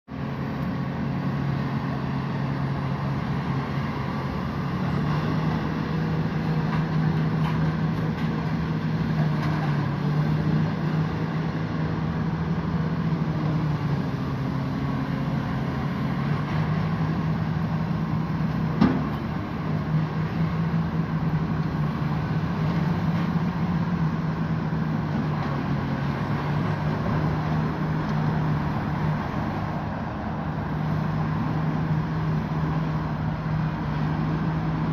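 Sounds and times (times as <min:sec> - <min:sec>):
excavator diesel engine running: 0:00.1 - 0:34.9.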